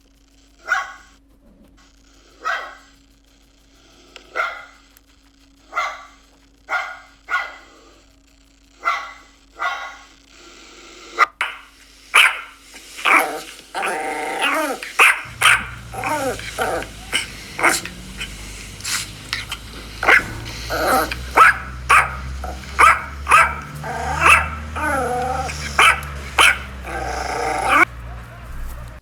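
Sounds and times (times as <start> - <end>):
dog barking: 0.6 - 1.2, 2.4 - 3.0, 4.2 - 4.8, 5.6 - 8.1, 8.8 - 10.2, 11.2 - 28.8
steady low hum: 11.5 - 29.0.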